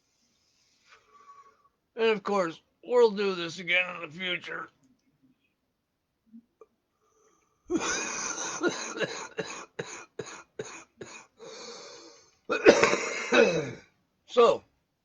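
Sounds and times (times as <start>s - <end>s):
wheezy breath: 0.2s - 1.8s, 11.4s - 12.4s
man coughing: 7.7s - 11.4s, 12.5s - 13.9s.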